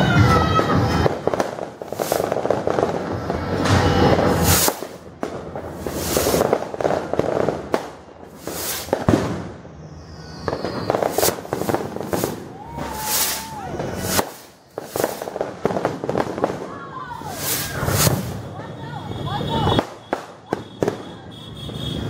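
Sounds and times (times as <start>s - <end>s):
fireworks bangs and crackling: 0.0s - 22.0s
falling firework whistle: 9.7s - 15.4s, 16.6s - 18.6s.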